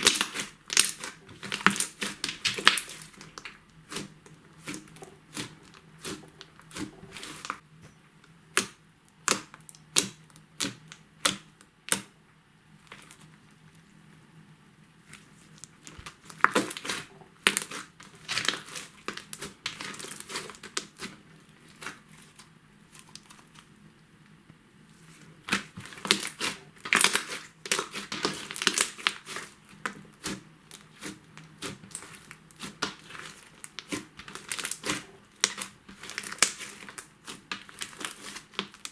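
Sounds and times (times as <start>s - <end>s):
slime popping and crackling: 0.0s - 7.6s, 15.5s - 21.2s, 25.4s - 38.9s.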